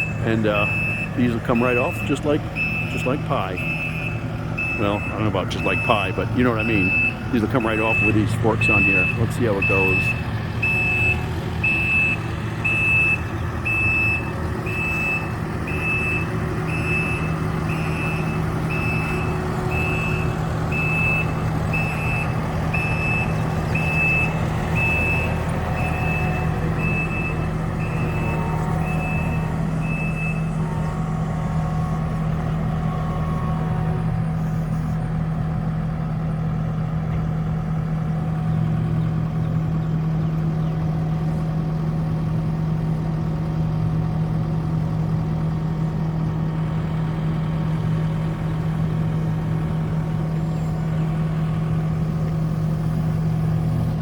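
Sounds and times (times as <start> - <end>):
backup alarm beeping: 0.0 - 32.0
diesel engine running: 0.0 - 54.0.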